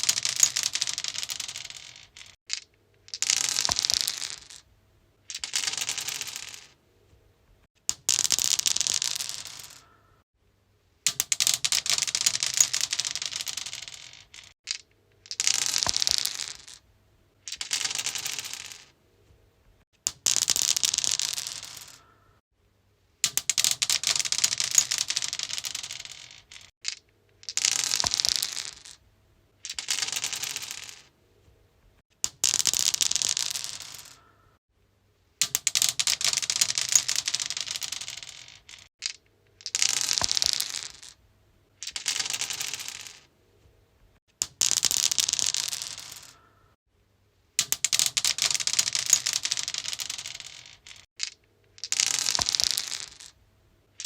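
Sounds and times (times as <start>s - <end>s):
dice clattering on stone: 0.0s - 4.7s, 5.3s - 6.8s, 7.9s - 10.0s, 11.1s - 16.8s, 17.4s - 18.9s, 20.0s - 22.1s, 23.2s - 29.0s, 29.6s - 31.1s, 32.2s - 34.3s, 35.4s - 41.2s, 41.8s - 43.3s, 44.4s - 46.5s, 47.6s - 54.0s.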